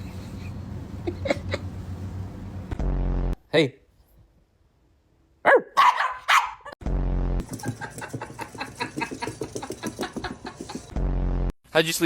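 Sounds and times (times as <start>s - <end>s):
small dog yapping: 5.4s - 6.8s.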